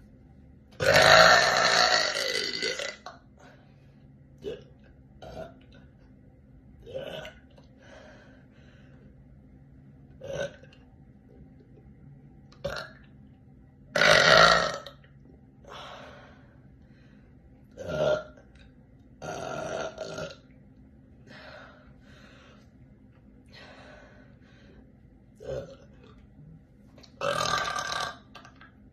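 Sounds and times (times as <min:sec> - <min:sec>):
woman burping: 0:00.8 - 0:03.1, 0:27.2 - 0:28.2.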